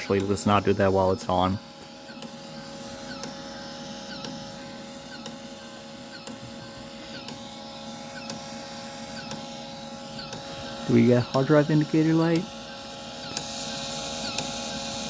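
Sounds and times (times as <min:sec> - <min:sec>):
computer fan hum: 0:00.0 - 0:15.0
steady tones: 0:06.2 - 0:12.6.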